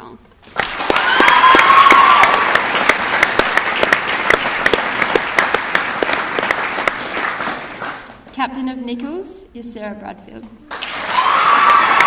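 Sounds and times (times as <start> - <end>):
audience applauding: 0.4 - 8.1, 10.7 - 12.0.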